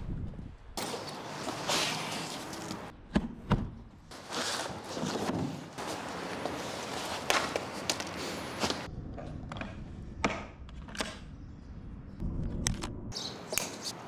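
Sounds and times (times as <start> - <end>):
packaging rustling: 0.8 - 2.9, 4.2 - 8.9.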